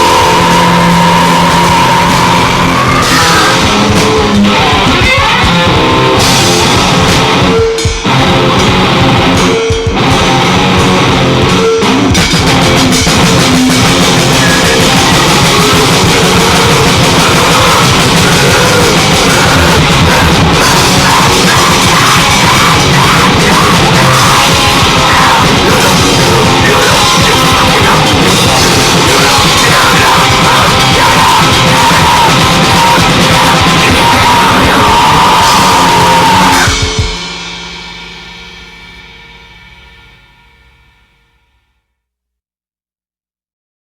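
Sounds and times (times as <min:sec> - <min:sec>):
grindcore song: 0:00.0 - 0:41.3.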